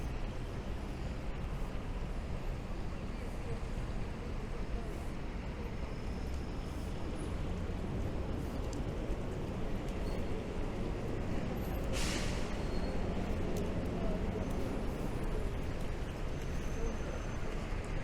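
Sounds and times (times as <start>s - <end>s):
traffic rumble: 0.0s - 18.0s
rain on street: 6.2s - 18.0s
short hiss: 11.9s - 12.5s.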